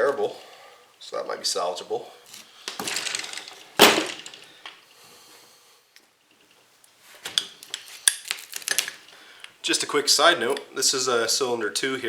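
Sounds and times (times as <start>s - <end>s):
engine parts scraping on workbench: 2.3s - 4.4s.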